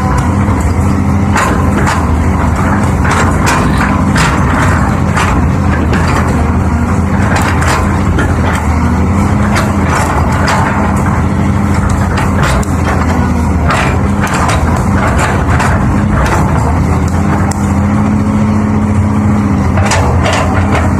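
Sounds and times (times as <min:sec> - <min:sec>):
heavy diesel engine running: 0:00.0 - 0:20.9
short knocks and clatters: 0:00.0 - 0:20.9.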